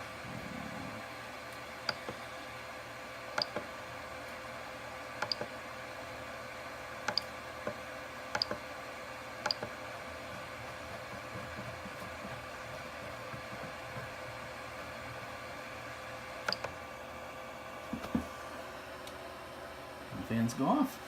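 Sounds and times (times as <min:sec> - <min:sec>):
cooling fans hissing: 0:00.0 - 0:21.0
sharp control clicks: 0:03.4 - 0:03.7, 0:07.0 - 0:07.3, 0:08.3 - 0:08.6.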